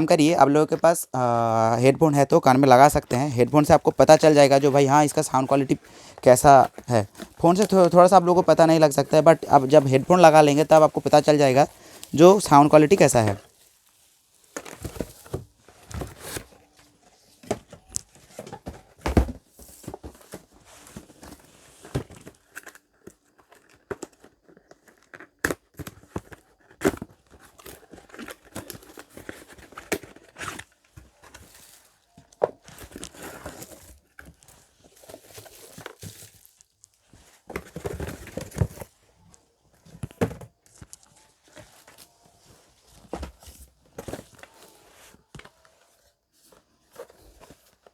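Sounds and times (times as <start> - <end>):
plastic packaging crinkling: 1.5 - 17.0
cardboard boxes being torn open: 14.4 - 16.5.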